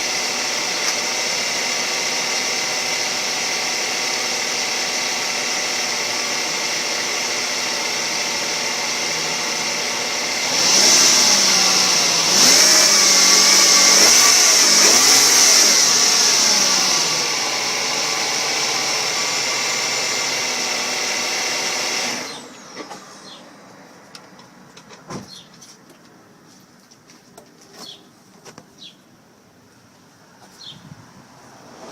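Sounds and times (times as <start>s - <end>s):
car engine whining: 0.0s - 25.5s.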